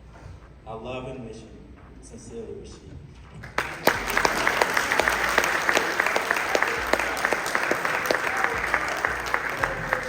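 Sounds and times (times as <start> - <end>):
crowd applauding: 3.4 - 10.0.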